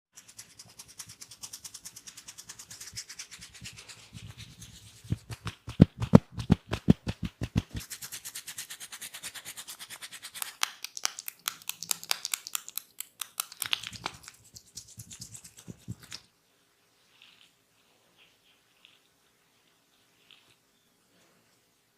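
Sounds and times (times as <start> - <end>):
hands rubbing and tapping: 0.2 - 8.2, 9.7 - 16.3.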